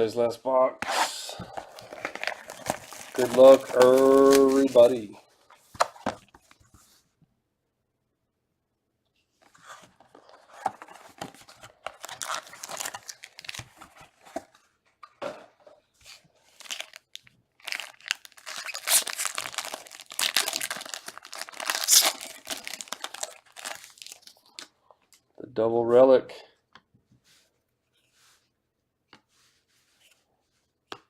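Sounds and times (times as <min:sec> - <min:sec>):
plastic wrap tearing and crinkling: 0:01.6 - 0:05.0, 0:10.7 - 0:14.2, 0:16.5 - 0:24.6.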